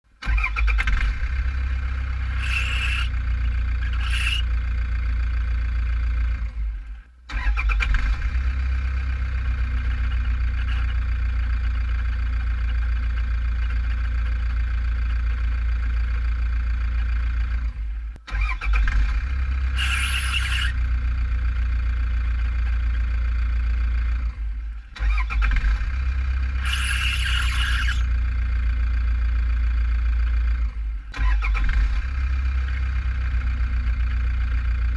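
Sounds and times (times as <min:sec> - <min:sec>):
diesel engine running: 0:00.1 - 0:34.9
drive belt squealing: 0:02.1 - 0:04.6, 0:18.3 - 0:21.0, 0:26.5 - 0:28.2.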